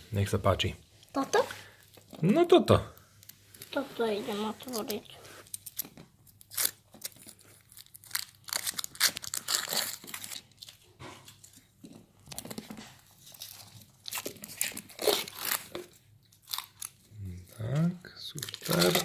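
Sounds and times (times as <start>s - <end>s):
foil wrapper crinkling and tearing: 4.6s - 11.6s, 12.2s - 19.0s.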